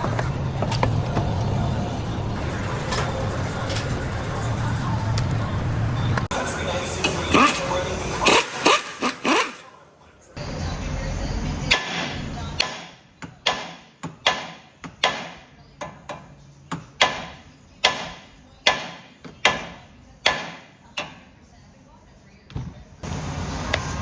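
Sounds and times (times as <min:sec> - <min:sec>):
rushing tool noise: 0:06.4 - 0:09.7.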